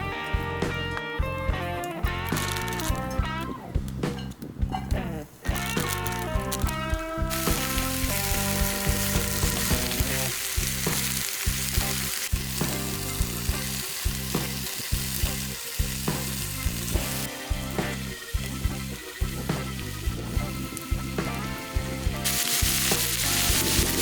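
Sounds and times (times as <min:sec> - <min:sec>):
vegetables sizzling in a frying pan: 0:07.3 - 0:24.0.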